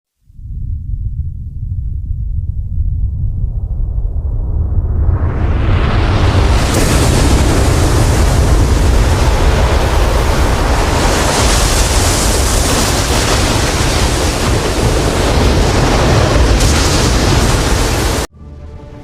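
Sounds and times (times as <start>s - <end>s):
rushing water like ocean surf: 6.0s - 18.3s.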